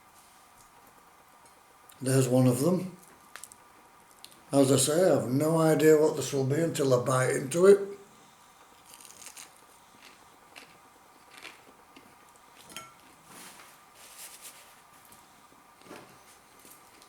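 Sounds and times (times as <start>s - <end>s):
crunching and chewing: 8.7s - 13.7s, 15.0s - 17.0s.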